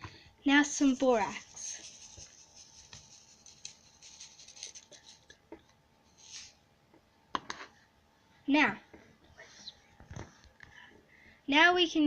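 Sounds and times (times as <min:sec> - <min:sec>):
scratching and rustling: 0:00.8 - 0:05.4.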